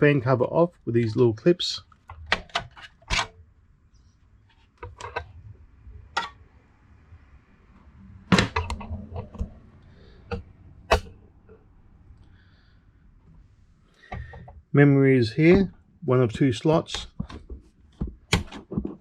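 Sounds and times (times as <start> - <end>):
plastic cover clicking and knocking: 16.8 - 19.0.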